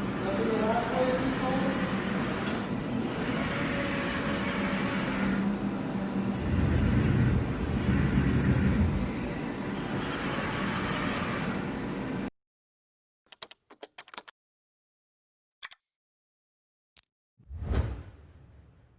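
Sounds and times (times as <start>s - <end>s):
whoosh: 17.5s - 18.9s.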